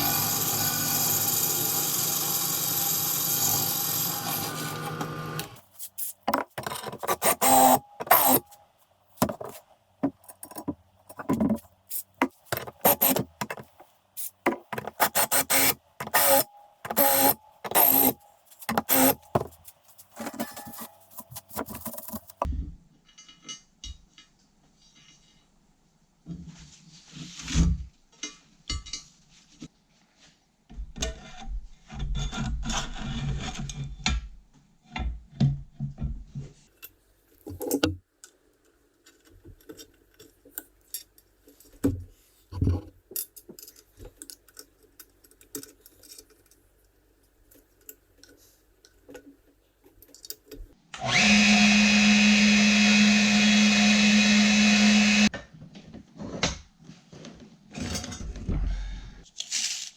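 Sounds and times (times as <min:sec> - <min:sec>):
knocks and clatter of parts: 0:06.2 - 0:08.4, 0:09.2 - 0:24.4
power tool humming: 0:15.0 - 0:19.2, 0:51.0 - 0:55.3.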